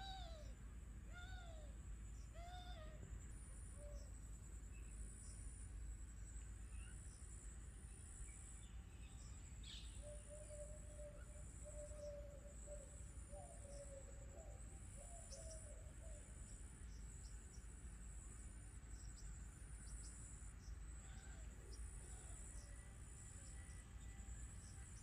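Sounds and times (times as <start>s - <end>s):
faint bird chirps: 0.0s - 5.5s.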